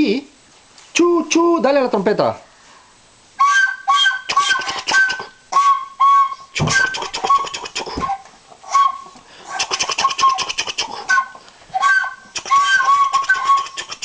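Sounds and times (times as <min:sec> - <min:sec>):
trumpet toots: 0:03.4 - 0:08.2
trumpet sputtering puffing: 0:03.9 - 0:14.0.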